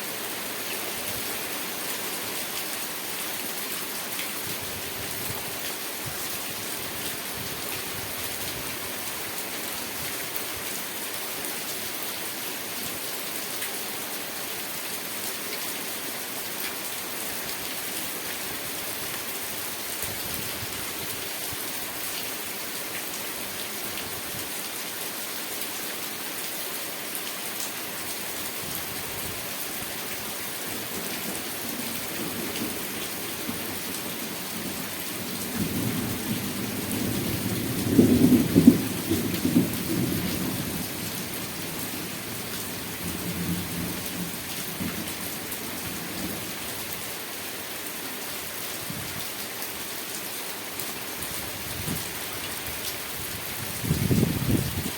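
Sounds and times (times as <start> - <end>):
steady rain: 0.0 - 54.9
low rumble of thunder: 35.5 - 40.4.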